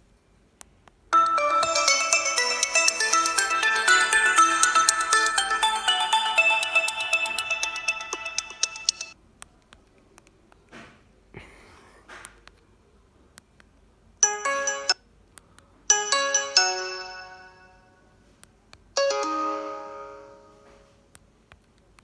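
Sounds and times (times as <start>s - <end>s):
phone ringtone chiming: 1.2s - 9.2s, 14.2s - 15.0s, 15.9s - 17.8s, 19.0s - 20.6s.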